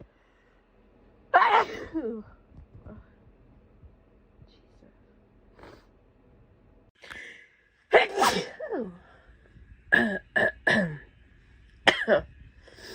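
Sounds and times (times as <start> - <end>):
person sneezing: 1.4 - 2.1, 8.0 - 8.6.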